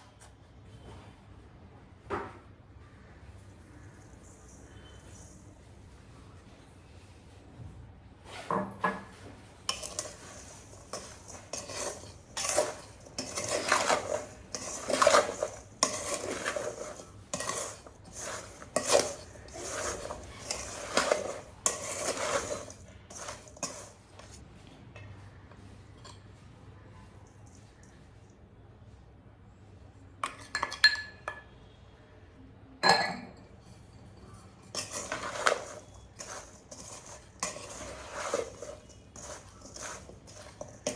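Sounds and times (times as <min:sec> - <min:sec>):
utensils and dishes clattering: 0:09.7 - 0:24.4, 0:32.8 - 0:40.9.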